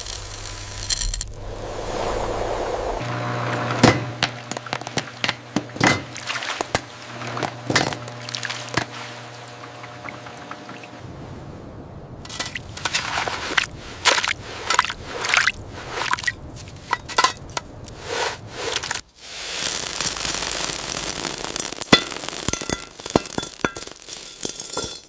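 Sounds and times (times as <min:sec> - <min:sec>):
steady low hum: 0:00.2 - 0:12.2
wet swishing or pouring: 0:00.8 - 0:03.0, 0:12.3 - 0:17.0.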